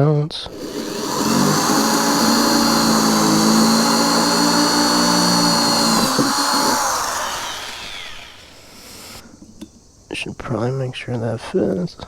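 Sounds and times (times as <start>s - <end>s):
electric drill drilling: 0.5s - 9.2s.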